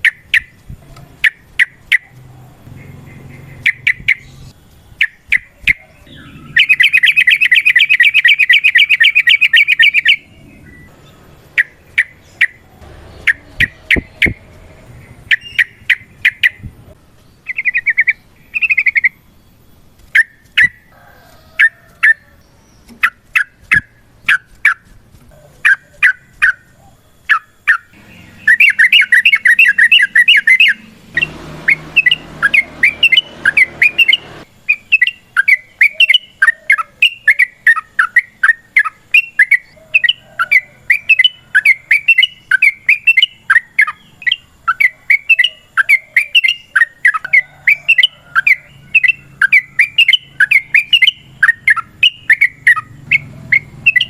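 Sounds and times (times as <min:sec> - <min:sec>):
bird chattering chirps: 0:01.2 - 0:19.2, 0:21.6 - 0:54.0.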